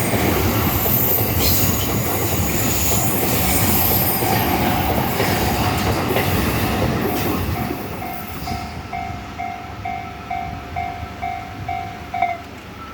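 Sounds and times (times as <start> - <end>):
train rolling past: 0.0 - 12.9
crossing warning bell ringing: 7.4 - 12.9.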